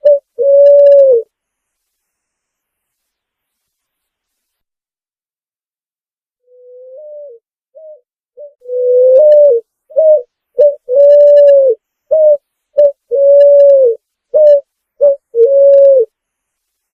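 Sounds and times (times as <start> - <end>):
pigeon cooing: 0.0 - 1.3, 6.5 - 16.1.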